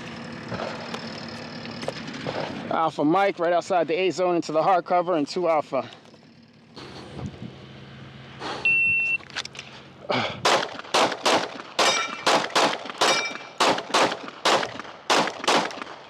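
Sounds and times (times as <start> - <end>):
shot timer beep: 8.6 - 9.2
pistol shots: 10.4 - 16.0
bullets ringing off steel: 10.5 - 16.0.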